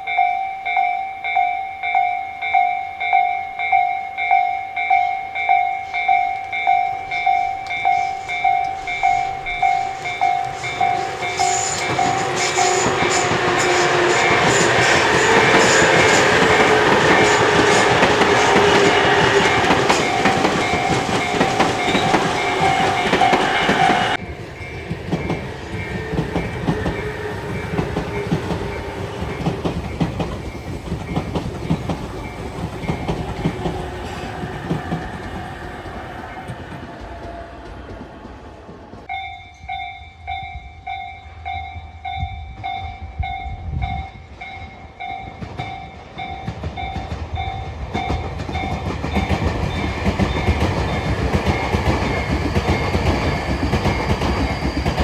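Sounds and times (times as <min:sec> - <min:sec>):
level crossing bell ringing: 0:00.0 - 0:13.5, 0:14.2 - 0:24.2
electric train passing: 0:00.0 - 0:55.0
train wheels clacking on rail joints: 0:03.7 - 0:39.8, 0:44.5 - 0:55.0.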